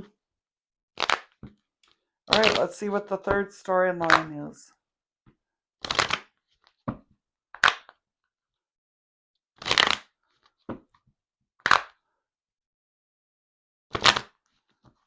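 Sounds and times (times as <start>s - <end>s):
cards being shuffled: 1.0s - 1.6s, 2.3s - 2.7s, 5.8s - 6.8s, 7.6s - 8.0s, 9.6s - 10.1s, 11.6s - 12.0s, 13.9s - 14.4s.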